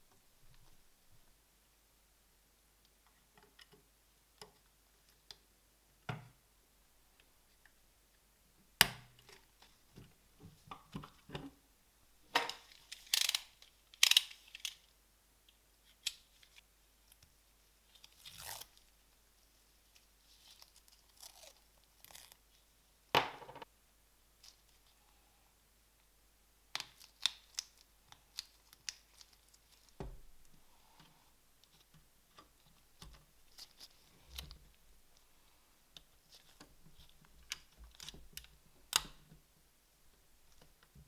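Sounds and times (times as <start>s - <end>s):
small parts clicking and tapping: 12.4s - 14.9s.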